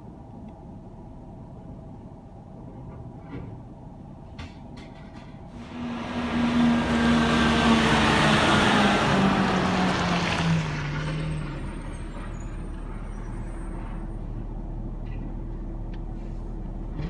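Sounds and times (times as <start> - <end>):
garbage truck engine running: 5.6 - 14.8.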